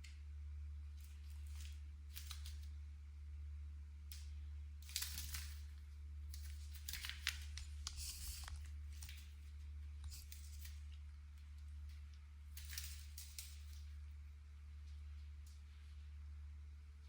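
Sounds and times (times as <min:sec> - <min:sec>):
low hum: 0:00.0 - 0:17.0
rustling and scratching: 0:04.8 - 0:14.1.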